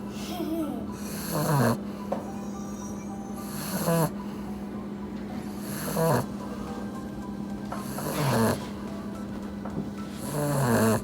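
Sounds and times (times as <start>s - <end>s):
puppy snoring loudly: 1.0s - 1.9s, 3.4s - 4.2s, 5.5s - 6.4s, 7.8s - 8.8s, 10.2s - 11.0s.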